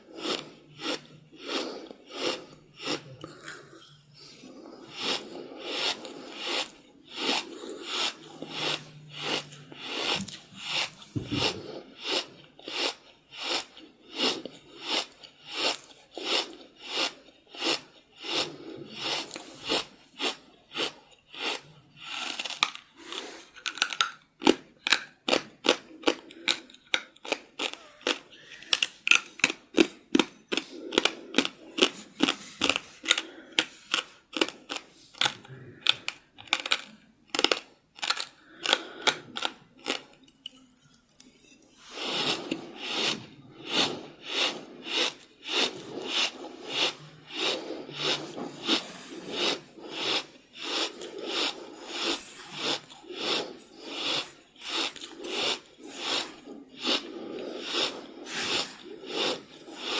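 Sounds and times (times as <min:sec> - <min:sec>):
heavy rapid breathing: 0:00.0 - 0:12.7, 0:41.8 - 0:59.9.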